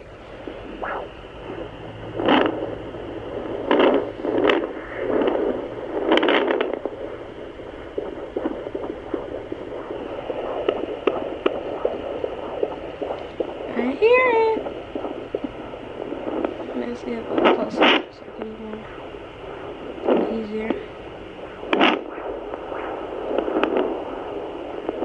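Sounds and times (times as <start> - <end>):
faint regular heartbeats: 0.0 - 25.0
probe scraping bursts: 0.0 - 25.0
whooshing static: 0.0 - 25.0.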